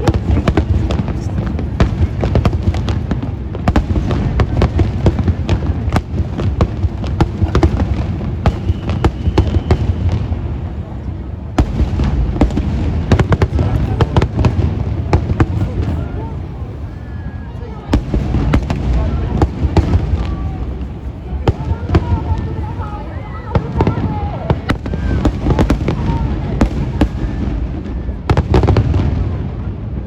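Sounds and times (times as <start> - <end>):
fireworks shells booming: 0.0 - 16.9, 17.8 - 22.8
fireworks crackling pops: 0.0 - 17.1, 17.8 - 30.0.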